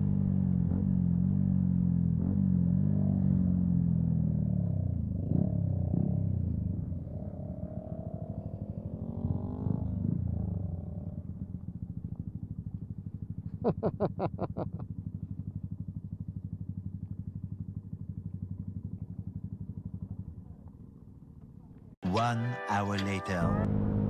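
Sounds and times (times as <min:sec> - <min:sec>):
motorcycle engine puttering: 0:05.3 - 0:22.0.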